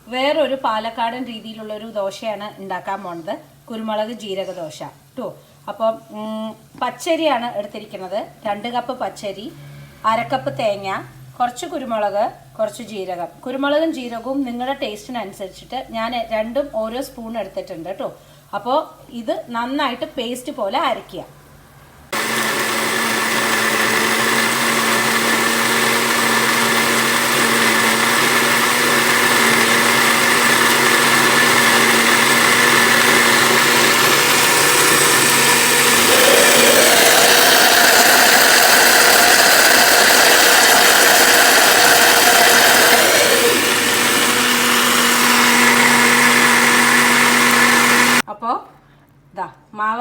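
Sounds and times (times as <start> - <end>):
kitchen mixer grinder running: 22.1 - 48.2.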